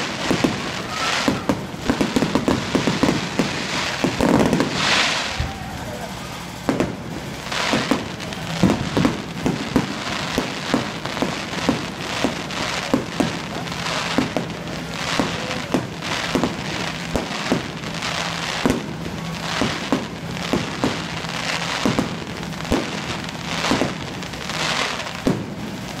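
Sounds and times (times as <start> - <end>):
crackling firework hiss: 0.0 - 26.0
firework bangs: 0.0 - 26.0.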